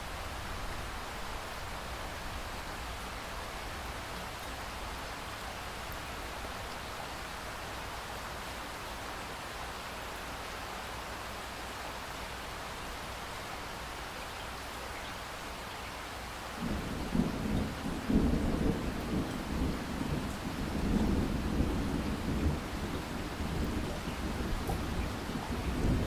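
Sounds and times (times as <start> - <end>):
steady rain: 0.0 - 26.0
thunder rumbling: 16.6 - 26.0.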